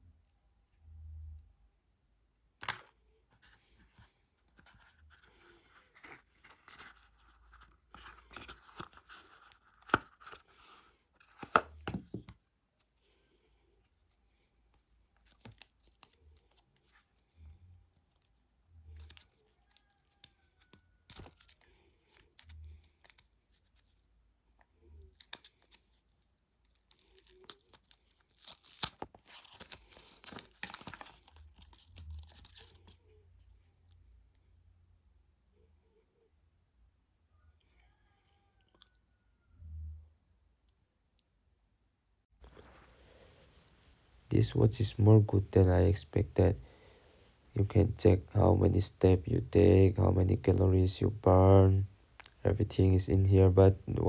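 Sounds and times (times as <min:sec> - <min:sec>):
packaging tearing and crinkling: 0:26.8 - 0:32.7
packaging clicks and rustling: 0:28.9 - 0:32.8.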